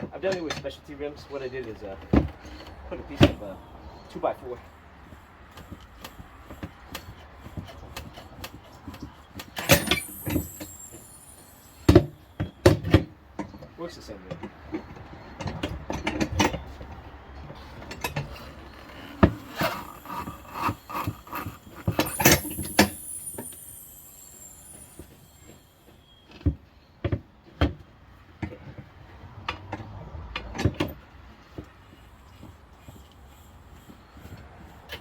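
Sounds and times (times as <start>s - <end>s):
high falling squeak: 9.6s - 12.9s, 18.4s - 26.9s.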